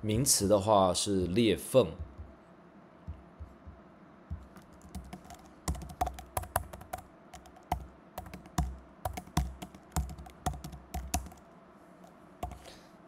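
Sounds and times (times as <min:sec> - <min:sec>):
dull thuds: 0:02.0 - 0:02.3
keys clicking and tapping: 0:02.0 - 0:02.3, 0:03.1 - 0:11.4, 0:12.4 - 0:12.7.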